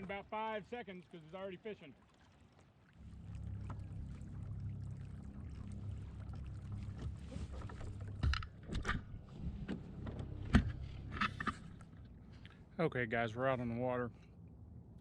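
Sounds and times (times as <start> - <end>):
boat moving through water: 1.9 - 12.6.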